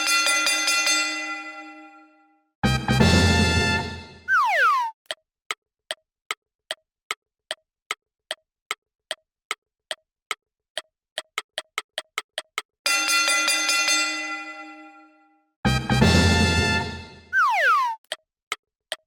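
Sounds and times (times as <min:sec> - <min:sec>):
bright music: 0:02.6 - 0:04.8, 0:15.7 - 0:18.0
countdown ticking: 0:02.6 - 0:05.2, 0:15.7 - 0:18.2
falling whistle: 0:04.3 - 0:05.0, 0:17.4 - 0:18.0.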